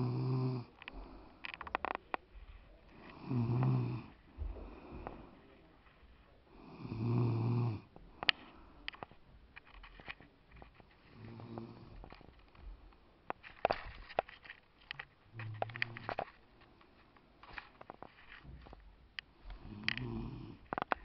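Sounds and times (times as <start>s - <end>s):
person snoring: 0.0s - 0.8s, 3.0s - 5.2s, 6.6s - 7.9s, 19.6s - 20.7s.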